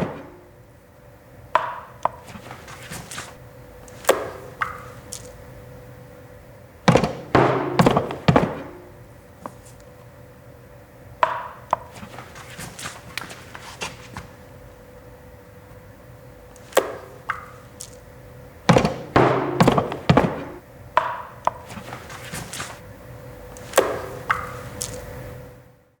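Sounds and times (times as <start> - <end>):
loud hard strikes: 6.9 - 9.0, 18.7 - 20.6
objects knocking and thunking: 6.9 - 9.0, 18.7 - 20.6.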